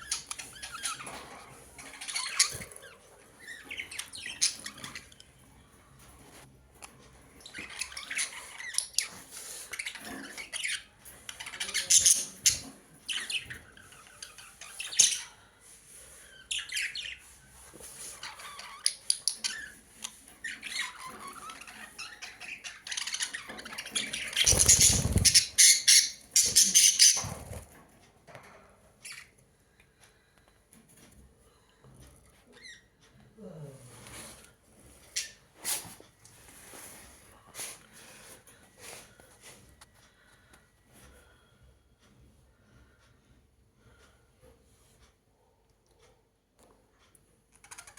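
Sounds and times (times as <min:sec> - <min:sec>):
birds squawking and chirping: 0:00.0 - 0:06.2, 0:06.8 - 0:27.9, 0:29.0 - 0:29.4, 0:47.5 - 0:47.9.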